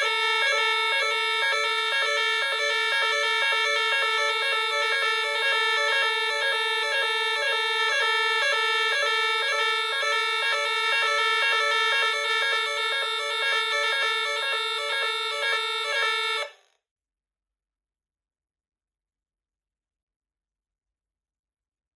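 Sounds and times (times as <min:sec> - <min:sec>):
fire alarm sounder tone: 0:00.0 - 0:16.6.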